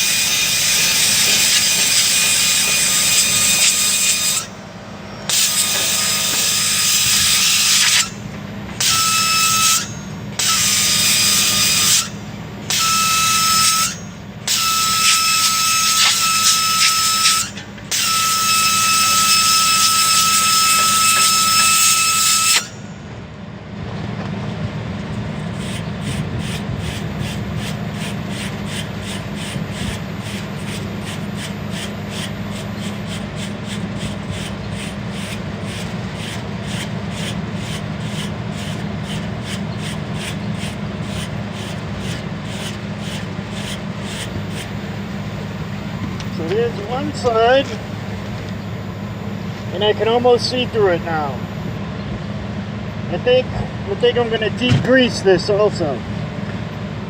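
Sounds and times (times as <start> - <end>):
brush scrubbing coil: 0.0 - 4.5, 14.5 - 22.7, 25.2 - 45.4
gas hissing with whistle: 8.8 - 23.0, 25.4 - 46.8.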